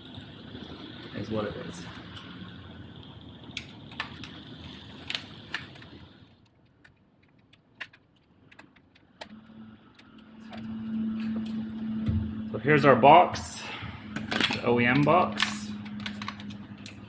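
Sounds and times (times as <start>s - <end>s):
low hum: 9.2s - 17.0s
small parts clicking and rattling: 14.2s - 17.0s.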